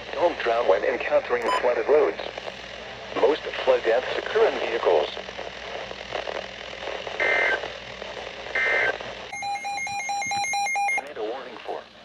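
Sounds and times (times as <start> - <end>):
electronic alarm beeping rapidly: 9.3 - 11.0.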